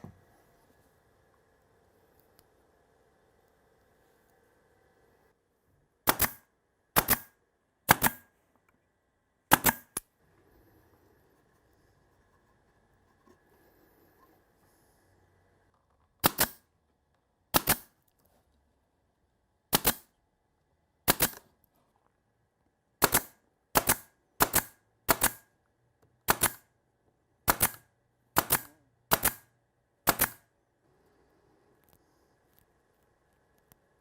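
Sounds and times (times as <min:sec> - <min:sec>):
nail gun firing: 0:06.0 - 0:08.3, 0:09.5 - 0:10.0, 0:16.2 - 0:16.7, 0:17.5 - 0:17.9, 0:19.7 - 0:20.1, 0:21.0 - 0:21.5, 0:23.0 - 0:25.5, 0:26.2 - 0:26.7, 0:27.4 - 0:30.5.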